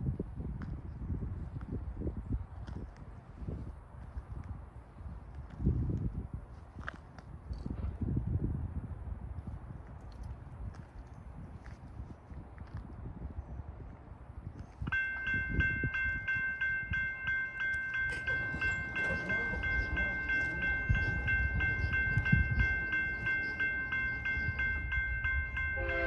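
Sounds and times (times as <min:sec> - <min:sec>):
crossing signal bell ringing: 0:14.9 - 0:26.0
locomotive horn: 0:17.9 - 0:26.0.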